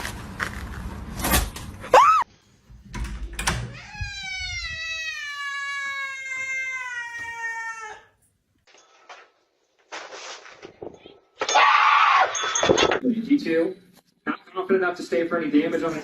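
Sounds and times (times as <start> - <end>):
cat meowing and yowling: 3.7 - 8.1.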